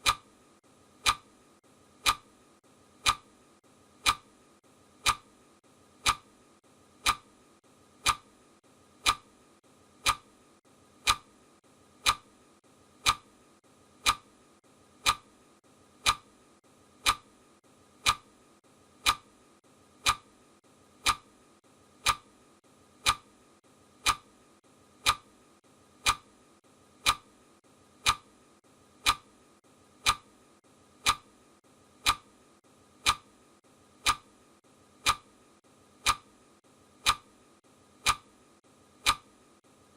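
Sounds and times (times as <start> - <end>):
clock ticking: 0.0 - 0.4, 1.0 - 1.4, 2.0 - 2.3, 3.0 - 3.4, 4.0 - 4.4, 5.0 - 5.4, 6.0 - 6.4, 7.0 - 7.4, 8.0 - 8.4, 9.0 - 9.4, 10.0 - 10.4, 11.0 - 11.4, 12.0 - 12.4, 13.0 - 13.4, 14.0 - 14.4, 15.0 - 15.4, 16.0 - 16.4, 17.0 - 17.4, 18.0 - 18.4, 19.0 - 19.4, 20.0 - 20.4, 21.0 - 21.4, 22.0 - 22.4, 23.0 - 23.4, 24.0 - 24.4, 25.0 - 25.4, 26.0 - 26.4, 27.0 - 27.4, 28.0 - 28.4, 29.0 - 29.4, 30.0 - 30.4, 31.0 - 31.4, 32.0 - 32.4, 33.0 - 33.4, 34.0 - 34.4, 35.0 - 35.4, 36.0 - 36.4, 37.0 - 37.4, 38.0 - 38.4, 39.0 - 39.4.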